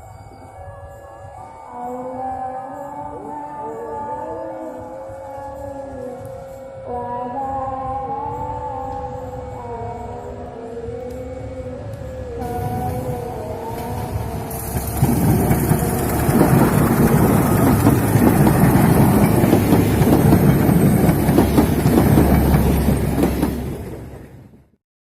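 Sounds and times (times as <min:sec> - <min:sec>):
low rumble: 0:12.4 - 0:24.7
train wheels clattering: 0:12.4 - 0:24.7.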